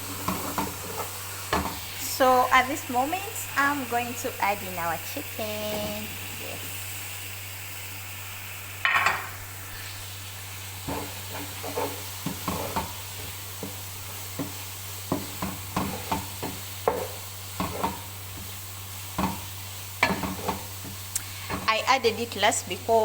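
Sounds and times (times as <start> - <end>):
spoon scraping a pan: 0.0 - 1.9, 10.8 - 21.7
sauce sizzling in a pan: 0.0 - 23.0.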